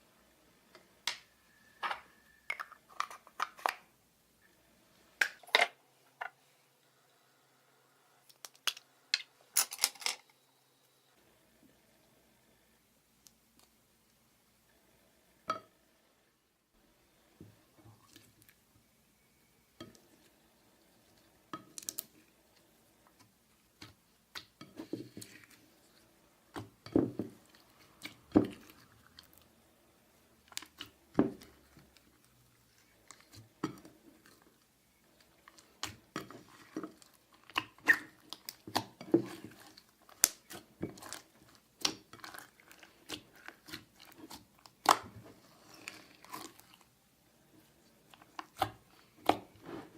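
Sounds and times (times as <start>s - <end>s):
slime squelching and popping: 35.4s - 46.9s.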